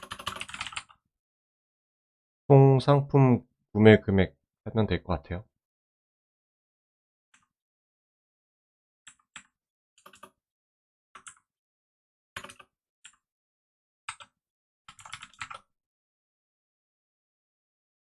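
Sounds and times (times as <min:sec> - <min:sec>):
computer keyboard typing: 0:00.0 - 0:01.0, 0:09.1 - 0:10.4, 0:12.4 - 0:13.2, 0:14.1 - 0:15.6.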